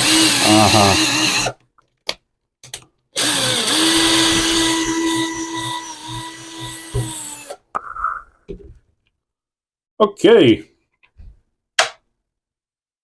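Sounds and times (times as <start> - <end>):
rotary tool motor whine: 0.0 - 1.5, 3.2 - 7.5.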